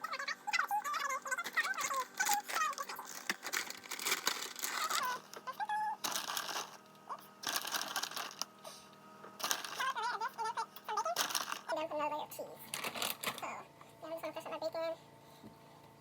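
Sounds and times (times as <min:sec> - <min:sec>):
steady low hum: 0:00.0 - 0:16.0
plastic packaging crinkling: 0:01.1 - 0:06.8, 0:07.4 - 0:08.6, 0:09.4 - 0:10.0, 0:11.0 - 0:11.7, 0:12.7 - 0:13.5.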